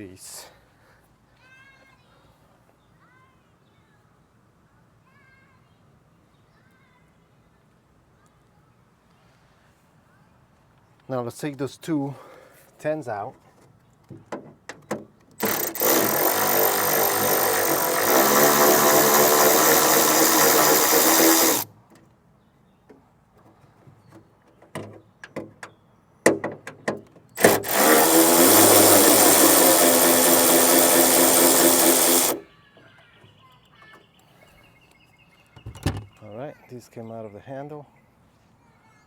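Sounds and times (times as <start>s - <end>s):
power driver running: 15.4s - 21.7s, 27.4s - 32.4s.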